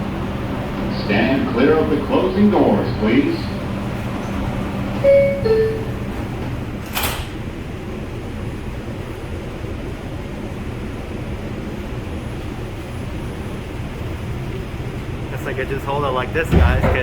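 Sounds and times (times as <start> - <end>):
subway car humming: 0.0 - 17.0
descending two-note door chime: 5.0 - 6.1
sliding doors shutting thump: 16.5 - 17.0.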